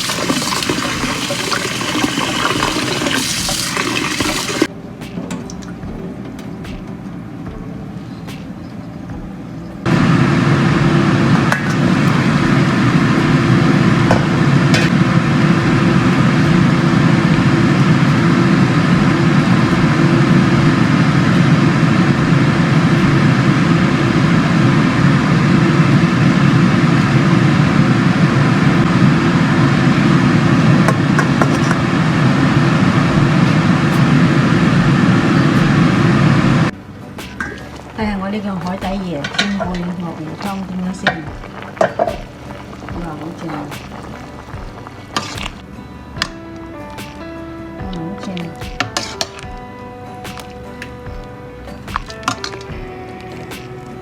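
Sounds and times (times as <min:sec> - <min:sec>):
loud low rumble: 0:09.8 - 0:36.8.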